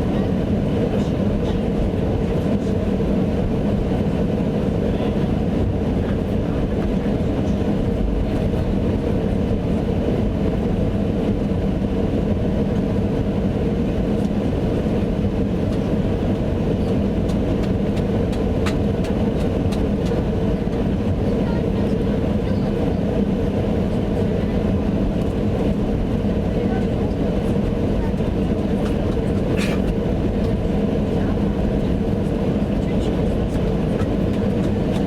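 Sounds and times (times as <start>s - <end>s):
jet engines rumbling in cabin: 0.0s - 35.0s.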